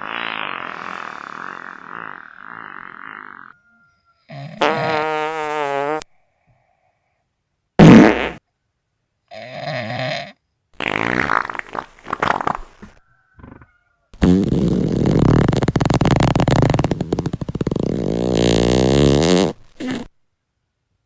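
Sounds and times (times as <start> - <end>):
fart sounds: 0.0 - 3.6, 4.3 - 6.1, 7.8 - 8.4, 9.3 - 20.1.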